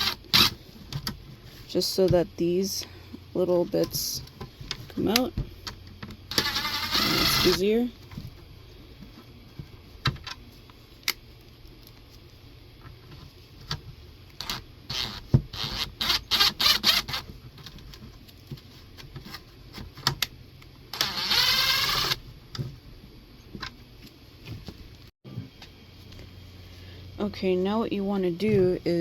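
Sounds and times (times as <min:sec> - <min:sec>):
power drill in short bursts: 0:06.3 - 0:07.6, 0:21.0 - 0:22.2.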